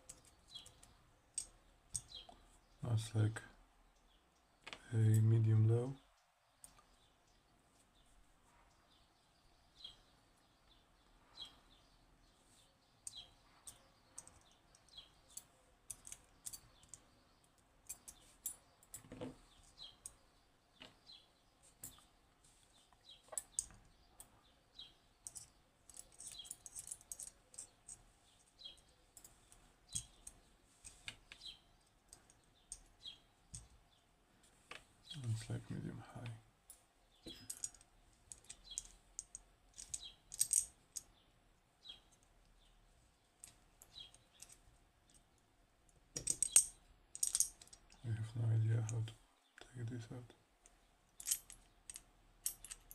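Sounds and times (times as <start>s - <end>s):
light metallic clicks of lock parts: 0.0s - 2.4s, 13.0s - 20.2s, 23.3s - 24.3s, 25.2s - 33.7s, 36.2s - 41.1s, 43.4s - 45.4s, 46.2s - 48.0s, 50.6s - 52.9s.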